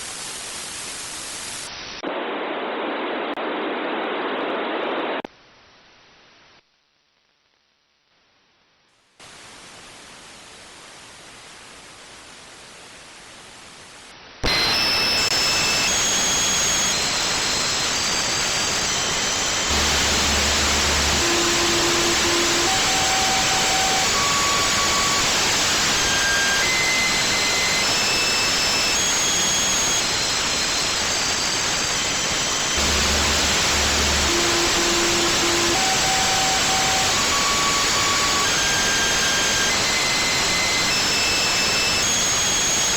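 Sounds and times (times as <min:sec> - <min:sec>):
radio static: 0:14.4 - 0:42.9.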